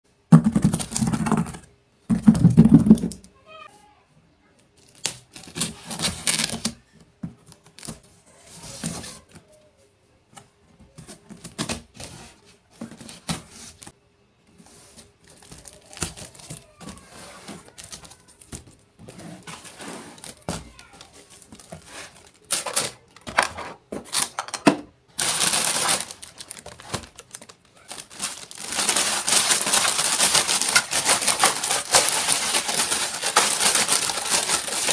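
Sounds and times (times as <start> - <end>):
plastic packaging crinkling: 4.8 - 6.8, 15.2 - 23.3, 25.1 - 34.9.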